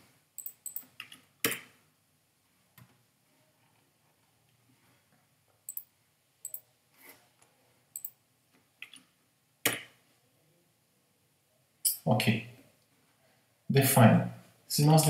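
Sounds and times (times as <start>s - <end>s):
keyboard keystrokes: 0.4s - 1.6s.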